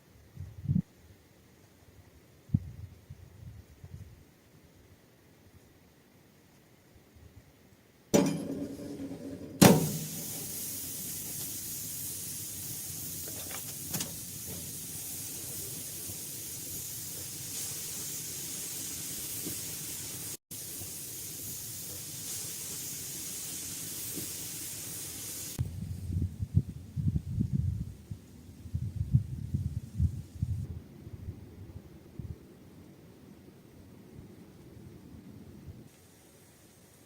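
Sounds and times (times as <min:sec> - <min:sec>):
steady hiss: 0:08.1 - 0:26.6, 0:32.4 - 0:37.0
thump: 0:08.2 - 0:10.5
sharp knock: 0:09.6 - 0:10.3.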